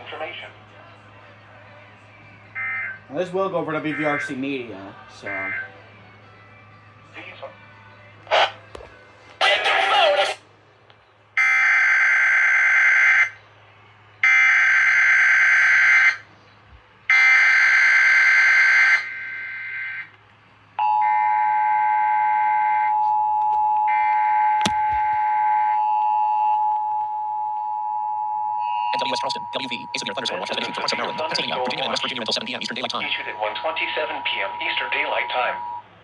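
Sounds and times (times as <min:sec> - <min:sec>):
two-tone attention signal: 0:28.6 - 0:32.0.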